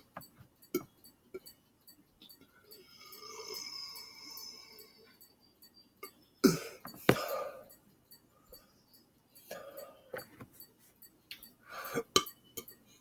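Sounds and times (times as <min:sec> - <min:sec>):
man clearing throat: 0:06.4 - 0:07.6.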